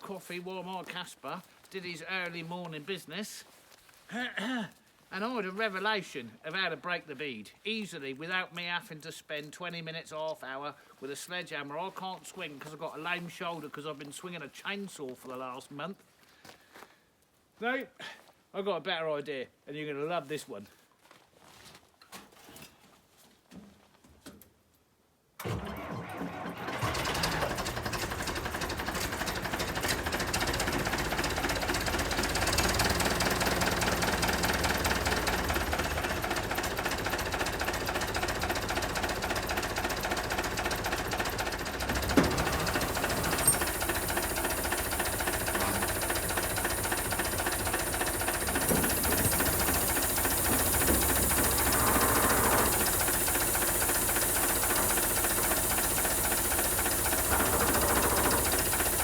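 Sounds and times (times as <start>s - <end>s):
diesel engine running: 25.5s - 59.0s
high hiss: 28.5s - 59.0s
sharp clicks: 40.3s - 59.0s.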